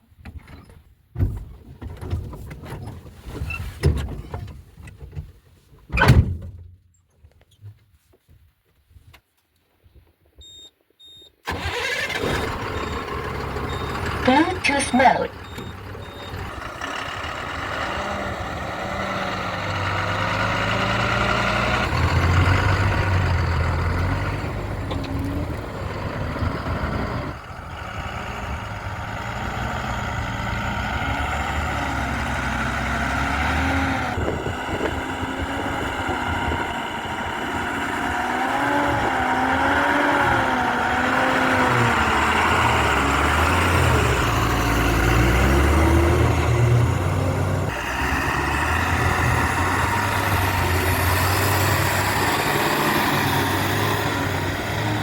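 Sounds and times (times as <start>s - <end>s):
heavy diesel machinery working: 11.5s - 55.0s.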